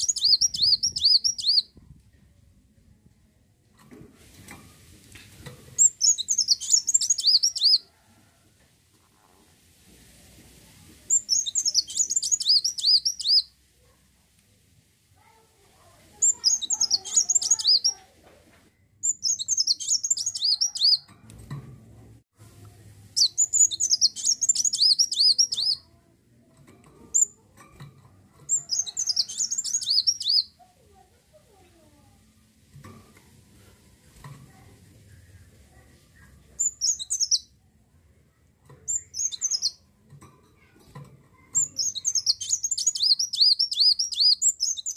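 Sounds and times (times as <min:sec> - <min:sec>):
sunbird twittering: 0:00.0 - 0:01.7, 0:05.8 - 0:07.8, 0:11.1 - 0:13.5, 0:16.2 - 0:18.0, 0:19.0 - 0:21.0, 0:23.2 - 0:25.8, 0:28.5 - 0:30.5, 0:41.6 - 0:44.9.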